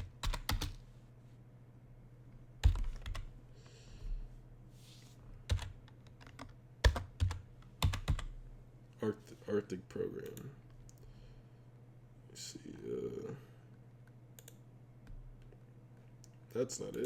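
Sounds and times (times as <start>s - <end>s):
computer keyboard keystrokes: 0.0s - 0.8s, 2.6s - 3.3s, 5.5s - 8.3s.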